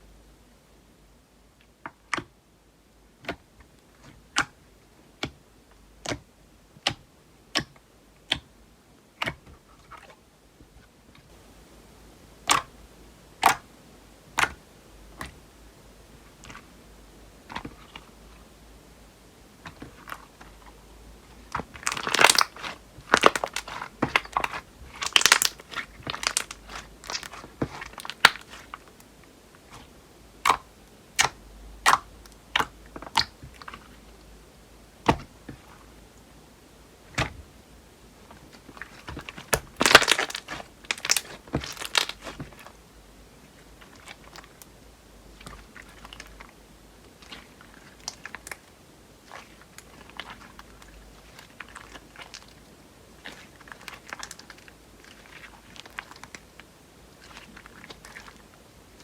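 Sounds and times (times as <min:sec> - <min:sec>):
slime popping and crackling: 0:21.4 - 0:29.0, 0:29.6 - 0:33.9, 0:38.5 - 0:42.7, 0:53.2 - 0:56.4.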